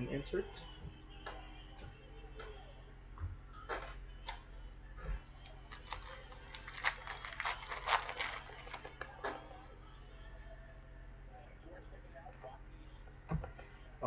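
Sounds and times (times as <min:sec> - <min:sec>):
foil wrapper tearing and crinkling: 0:05.6 - 0:09.1.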